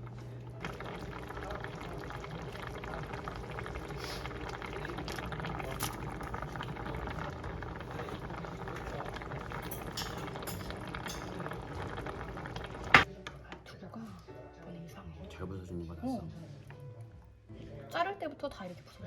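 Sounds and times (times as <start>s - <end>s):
stew bubbling in a pot: 0.0s - 13.1s.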